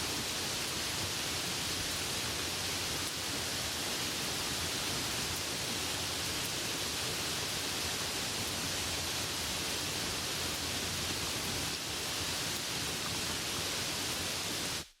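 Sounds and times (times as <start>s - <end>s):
soft rain falling: 0.0s - 15.0s.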